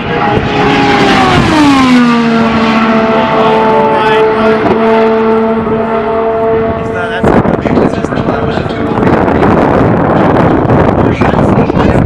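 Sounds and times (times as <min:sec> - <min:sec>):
race car screaming past: 0:00.0 - 0:07.6.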